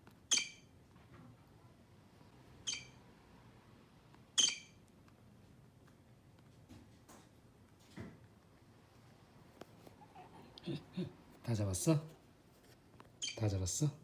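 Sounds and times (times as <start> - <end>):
squeaking toy mouse: 0.3 - 0.7, 2.7 - 3.0, 4.4 - 4.8, 13.2 - 13.5.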